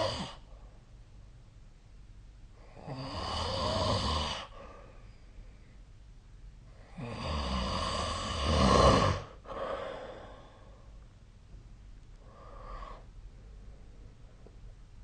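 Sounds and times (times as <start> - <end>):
person snoring: 2.6 - 4.6, 6.9 - 10.4
person breathing: 4.4 - 5.9, 9.2 - 11.0, 12.2 - 14.2.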